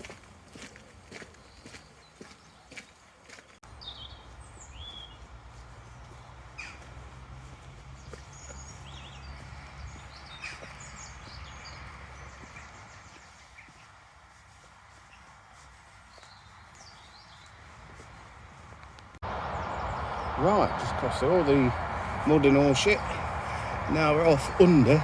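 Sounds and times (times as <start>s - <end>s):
small birds chirping: 0.0s - 25.0s
low outdoor rumble: 18.2s - 25.0s.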